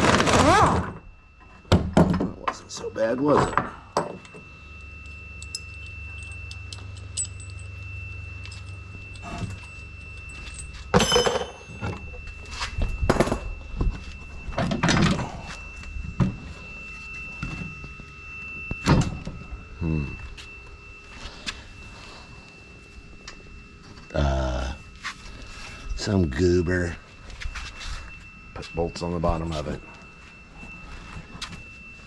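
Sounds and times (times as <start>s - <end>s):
low hum: 0.0s - 32.0s
ringing metal clank: 1.8s - 7.8s, 8.4s - 12.3s.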